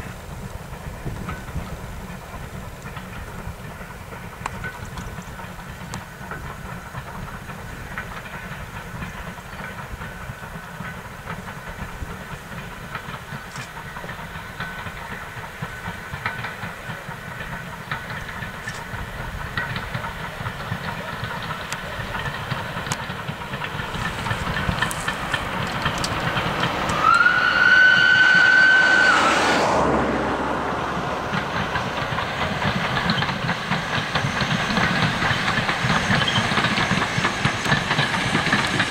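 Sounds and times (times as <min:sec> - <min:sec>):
hiss of steam: 0:00.0 - 0:29.7, 0:30.9 - 0:38.9
steam locomotive running: 0:00.0 - 0:38.9
steam whistle: 0:26.8 - 0:30.8.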